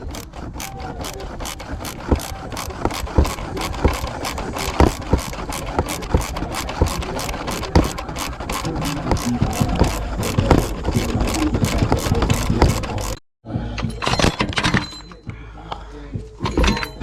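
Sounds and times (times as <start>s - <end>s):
ratchet wrench clicking: 0.0s - 13.2s.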